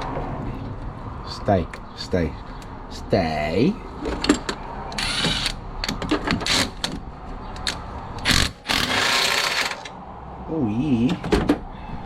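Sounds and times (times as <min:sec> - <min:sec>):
rattling and scraping: 0:03.9 - 0:09.9.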